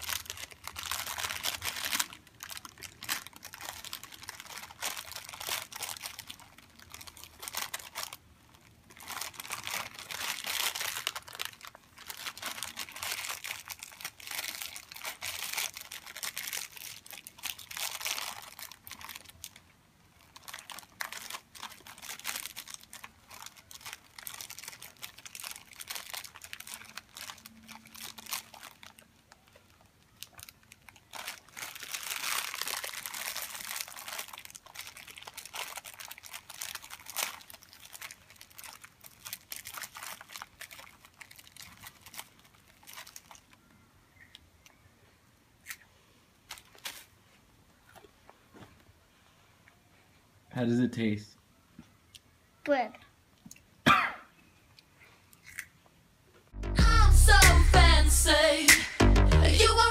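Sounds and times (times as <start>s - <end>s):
wrapper crinkling: 0.0s - 44.8s, 46.4s - 47.2s.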